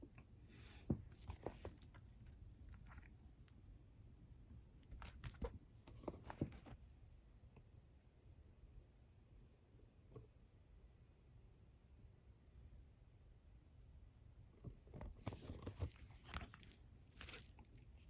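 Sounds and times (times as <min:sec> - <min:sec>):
packaging crinkling and tapping: 0:15.4 - 0:17.8.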